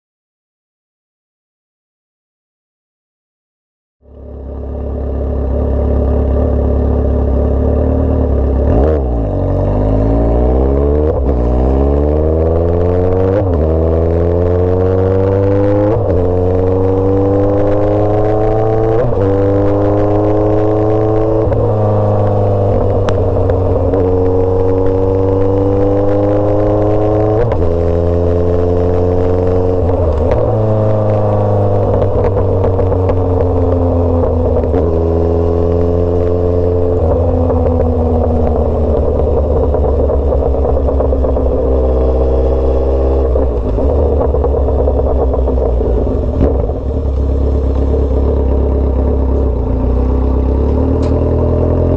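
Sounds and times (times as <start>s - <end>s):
motorcycle engine revving: 4.0s - 51.9s.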